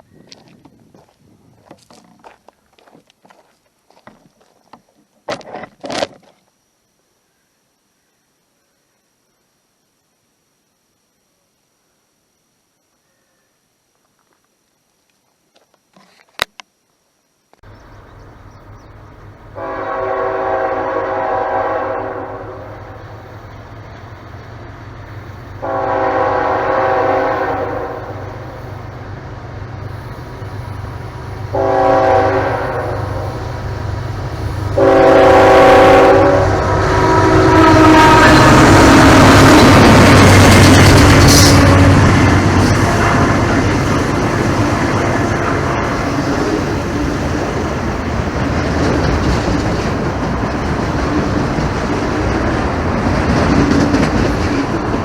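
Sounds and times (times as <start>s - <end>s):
locomotive engine rumble: 17.6s - 55.0s
train air horn: 19.6s - 23.2s, 25.6s - 28.7s, 31.4s - 33.6s, 34.6s - 39.9s, 41.1s - 46.8s.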